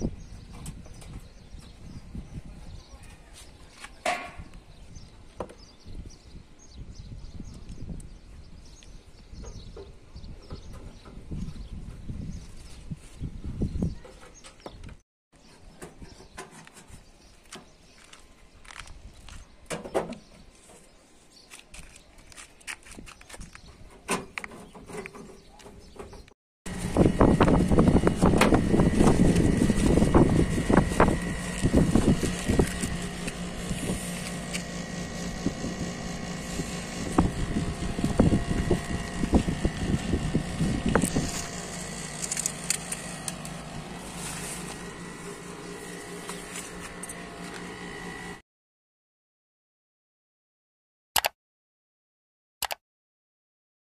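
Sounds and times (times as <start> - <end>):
machine humming and whining: 26.7 - 48.4
clicks and handling noise: 40.8 - 44.9.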